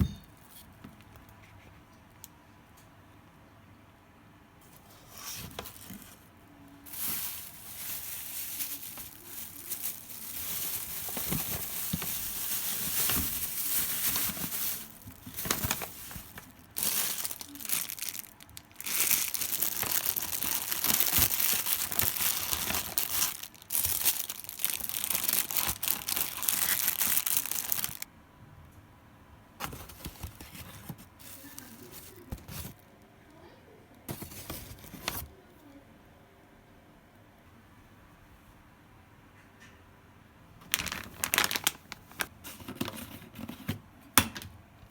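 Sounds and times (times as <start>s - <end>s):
packaging crinkling: 5.1s - 28.1s, 29.6s - 32.8s, 40.6s - 43.6s.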